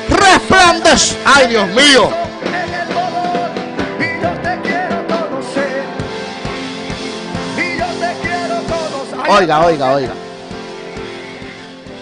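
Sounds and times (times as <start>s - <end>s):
instrumental music with light beat: 0.0s - 12.0s
person singing: 1.9s - 6.2s, 7.3s - 9.4s.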